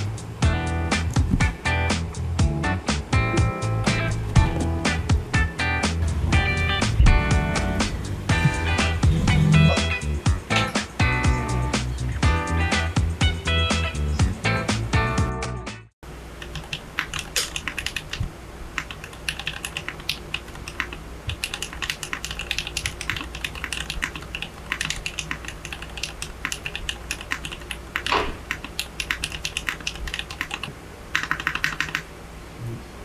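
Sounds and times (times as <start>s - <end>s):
clicky keyboard typing: 16.4s - 32.1s.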